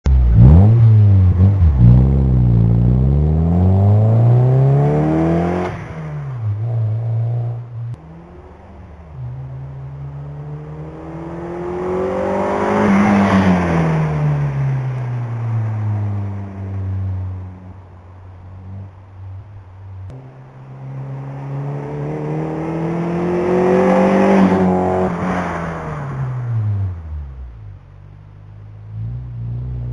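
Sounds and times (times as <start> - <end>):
car engine revving: 0.1 - 29.9.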